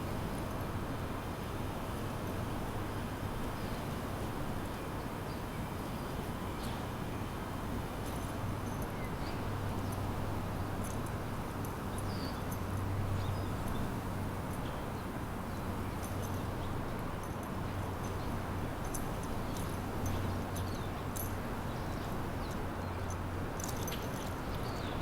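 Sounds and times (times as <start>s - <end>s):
low hum of city background: 0.0s - 25.0s.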